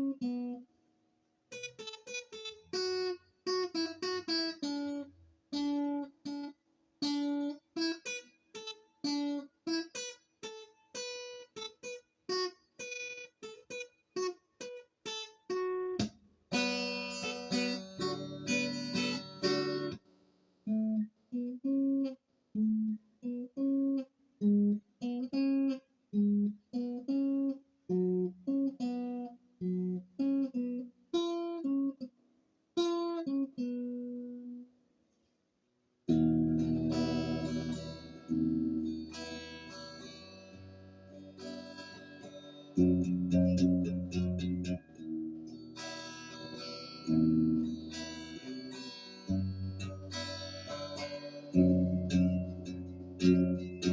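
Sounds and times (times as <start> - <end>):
acoustic guitar picked notes: 1.5 - 20.0, 36.1 - 53.9
acoustic guitar strummed chords: 15.6 - 20.0, 36.1 - 53.9.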